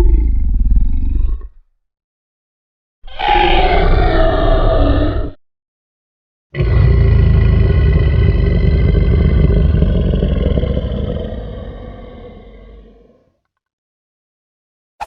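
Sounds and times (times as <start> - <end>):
deep rumbling creature growl: 0.0 - 1.6, 3.1 - 5.4, 6.6 - 13.3
creature roar: 3.1 - 5.4, 6.6 - 13.3.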